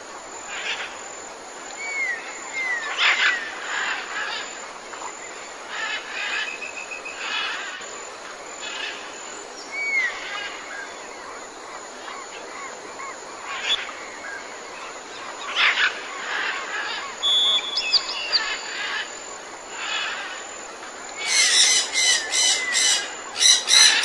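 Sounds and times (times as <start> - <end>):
insects hissing: 0.0 - 24.0
birds calling: 15.1 - 20.5, 21.1 - 24.0.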